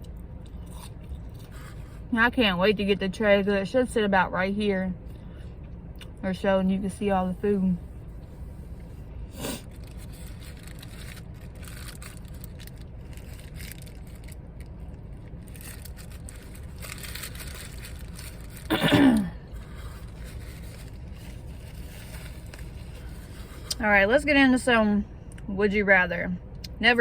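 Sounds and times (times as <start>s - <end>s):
faint chewing: 0.0s - 2.0s
low background rumble: 0.0s - 27.0s
food wrapper rustling: 9.6s - 18.8s, 19.4s - 23.8s.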